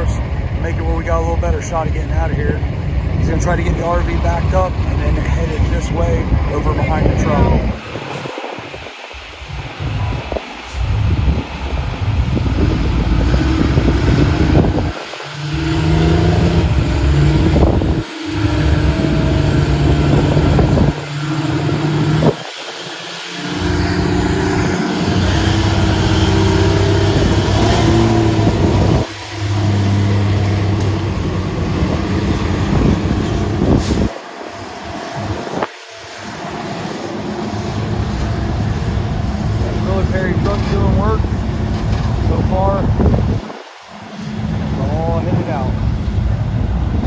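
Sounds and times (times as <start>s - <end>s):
heavy truck engine revving: 0.0s - 47.0s.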